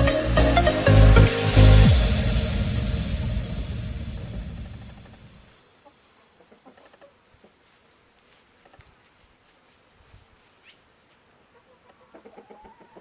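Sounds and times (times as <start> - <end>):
music: 0.0 - 5.2.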